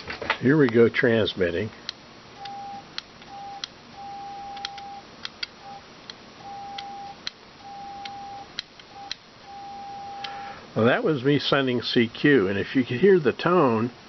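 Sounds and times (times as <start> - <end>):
morse code tone beeping: 2.4 - 5.0, 6.4 - 10.3
sharp relay clicks: 4.6 - 6.2.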